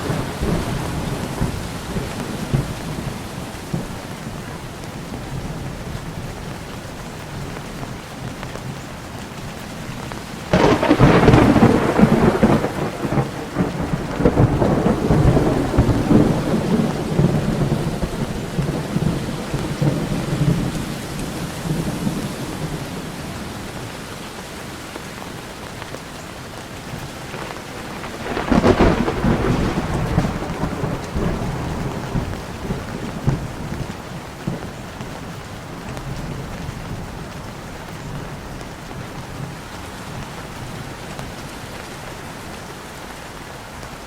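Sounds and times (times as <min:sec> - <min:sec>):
thunder cracking and rumbling: 0:00.0 - 0:06.6, 0:10.4 - 0:24.8, 0:26.6 - 0:37.5
steady rain: 0:00.0 - 0:44.0.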